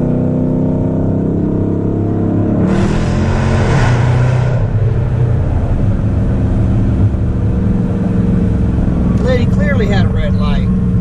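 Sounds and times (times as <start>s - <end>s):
car engine accelerating: 0.0s - 11.0s
rush of noise: 2.6s - 11.0s.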